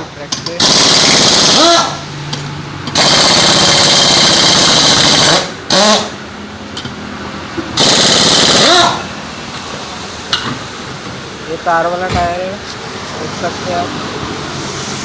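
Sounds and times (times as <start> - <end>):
pneumatic impact wrench hammering: 0.3 - 6.2, 7.8 - 9.0.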